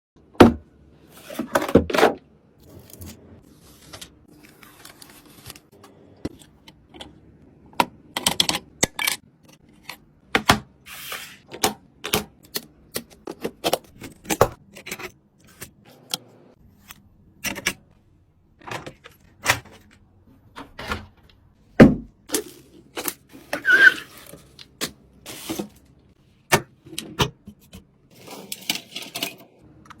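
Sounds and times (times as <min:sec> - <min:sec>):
computer parts clicking and knocking: 0:06.3 - 0:10.7.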